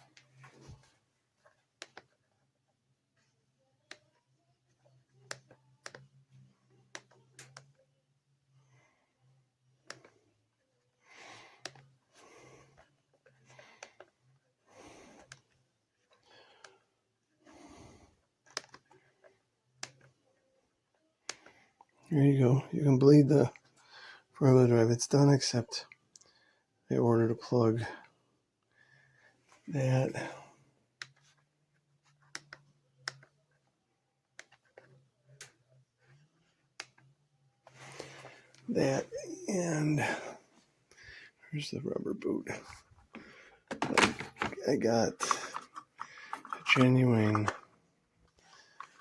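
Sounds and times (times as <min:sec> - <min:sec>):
soft breaths: 0:08.4 - 0:22.1, 0:23.5 - 0:24.4, 0:27.8 - 0:32.2, 0:34.7 - 0:43.7, 0:44.8 - 0:49.0.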